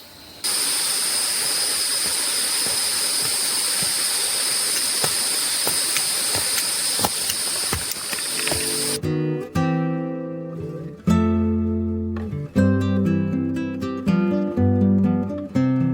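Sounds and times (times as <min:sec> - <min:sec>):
steady high-pitched tones: 0:00.0 - 0:09.0
stream water rushing: 0:00.4 - 0:09.0.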